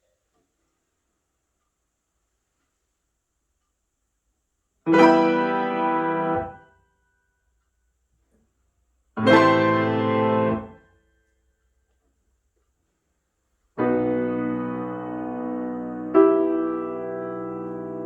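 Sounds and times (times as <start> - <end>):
piano chords: 4.9 - 6.6, 9.2 - 10.8, 13.8 - 18.0.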